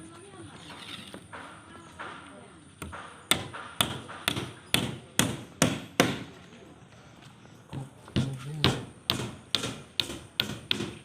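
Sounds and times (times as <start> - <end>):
hammer striking: 2.8 - 6.3, 8.1 - 11.0.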